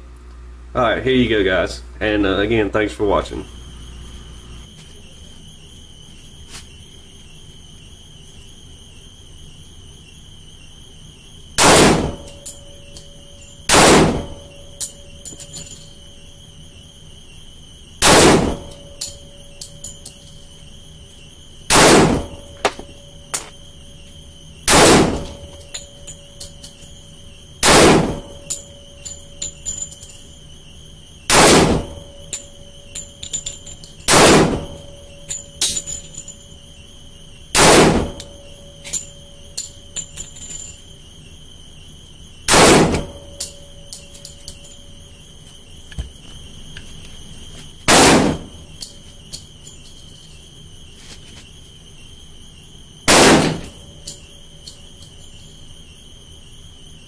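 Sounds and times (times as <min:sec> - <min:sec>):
pistol shots with ringing echo: 0:11.6 - 0:12.6, 0:13.7 - 0:15.6, 0:18.0 - 0:19.2, 0:21.7 - 0:23.0, 0:24.7 - 0:25.9, 0:27.6 - 0:29.5, 0:31.3 - 0:33.1, 0:34.1 - 0:35.9, 0:37.6 - 0:38.4, 0:42.5 - 0:43.4, 0:47.9 - 0:48.6, 0:53.1 - 0:53.9.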